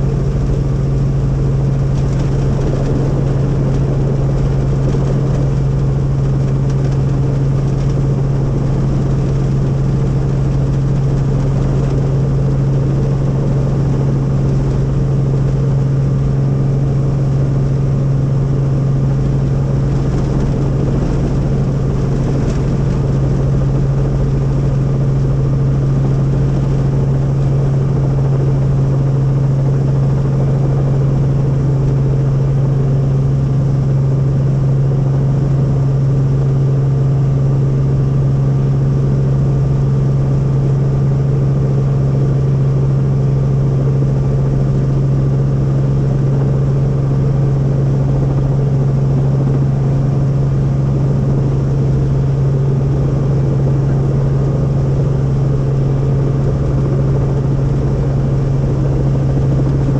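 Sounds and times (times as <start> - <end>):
helicopter engine and rotors: 0.0 - 59.9.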